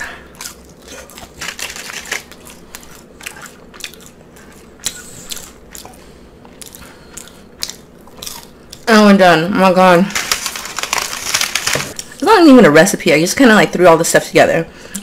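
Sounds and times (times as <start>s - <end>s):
person chewing crunchy fries: 0.0s - 9.0s, 10.1s - 12.1s.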